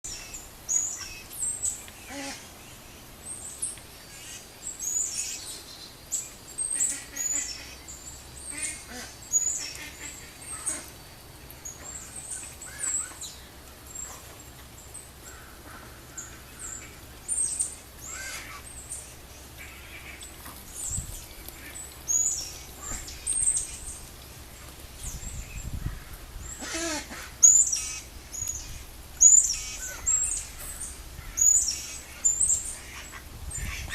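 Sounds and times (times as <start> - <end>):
small birds chirping: 0.0 - 33.9
duck coughing: 26.6 - 27.3.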